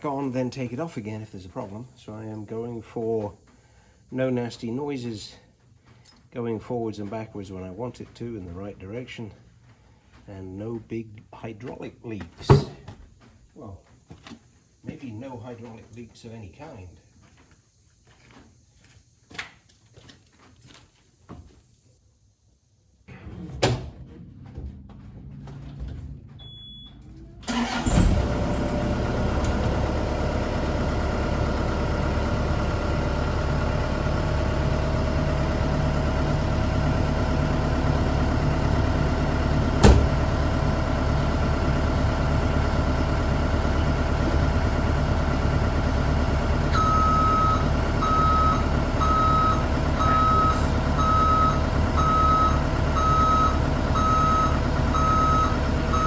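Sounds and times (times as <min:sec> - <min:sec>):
diesel engine running: 0:23.1 - 0:56.0
travel alarm beeping: 0:26.4 - 0:27.9, 0:46.6 - 0:56.0.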